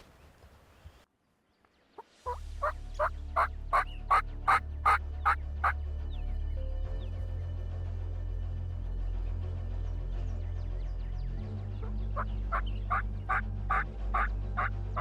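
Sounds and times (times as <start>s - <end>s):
turkey yelps: 2.0s - 5.8s, 12.2s - 15.0s
low music drone: 2.1s - 15.0s.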